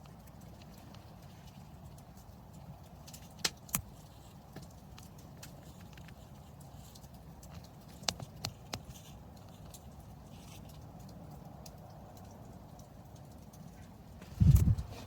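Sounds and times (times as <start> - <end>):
campfire embers crackling: 0.0 - 15.0
low steady background noise: 0.0 - 15.0
loud fire snaps: 3.0 - 4.1.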